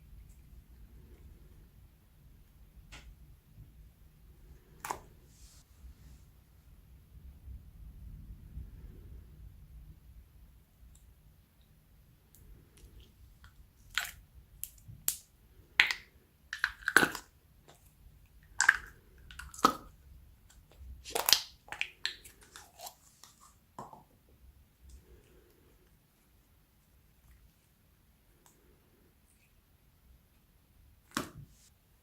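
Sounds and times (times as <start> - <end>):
slime squelching and popping: 12.8 - 23.4.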